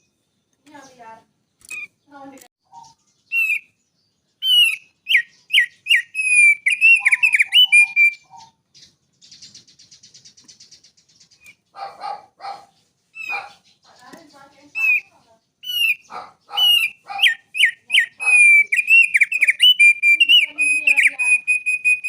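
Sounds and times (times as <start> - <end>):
songbird singing: 0.0 - 22.0.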